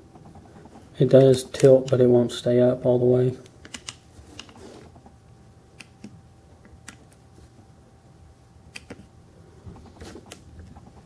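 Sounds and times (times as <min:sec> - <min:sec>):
faint steady hum: 0:00.0 - 0:11.0.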